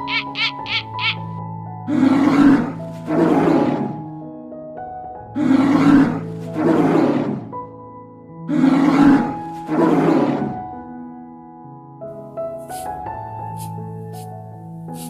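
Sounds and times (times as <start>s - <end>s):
animal giving rough calls: 0.0s - 1.2s, 1.9s - 4.0s, 5.4s - 7.5s, 8.5s - 10.6s
background music with held notes: 0.0s - 15.0s.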